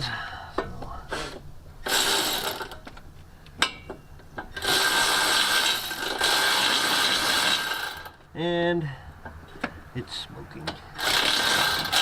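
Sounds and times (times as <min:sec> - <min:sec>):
power ratchet whirring: 0:01.8 - 0:02.8, 0:04.6 - 0:08.2, 0:11.0 - 0:12.0.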